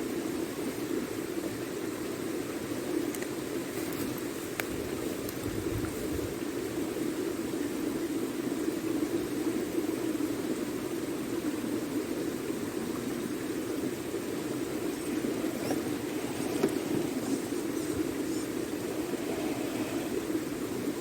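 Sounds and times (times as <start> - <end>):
river water rushing: 13.9 - 21.0.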